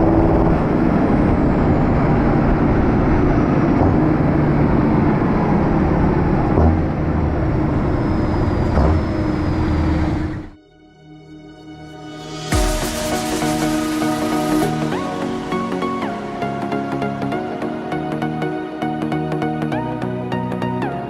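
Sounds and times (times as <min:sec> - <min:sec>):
heavy machinery engine running: 0:00.0 - 0:10.6.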